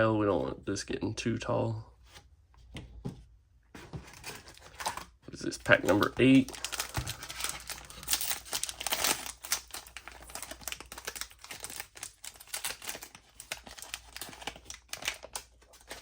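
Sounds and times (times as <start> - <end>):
plastic wrapper tearing and crinkling: 4.2 - 16.0.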